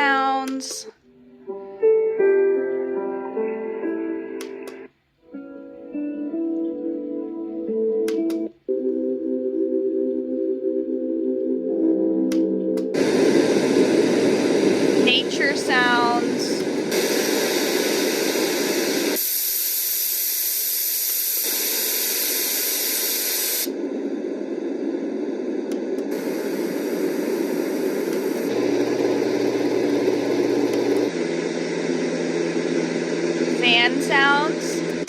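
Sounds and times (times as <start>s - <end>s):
sound machine rushing hiss: 13.0s - 35.0s.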